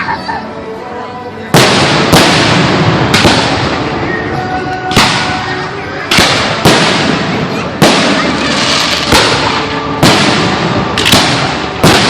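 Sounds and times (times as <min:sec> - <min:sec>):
firework shells bursting: 0:08.0 - 0:12.0.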